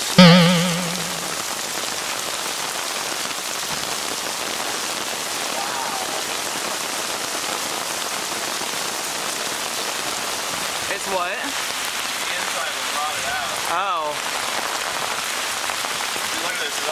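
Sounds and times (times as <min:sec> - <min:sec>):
rain pattering: 0:00.8 - 0:16.9.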